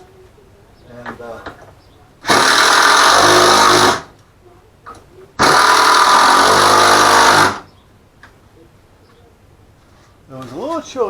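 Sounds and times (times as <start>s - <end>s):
power drill whirring: 2.2s - 4.2s, 5.4s - 7.7s.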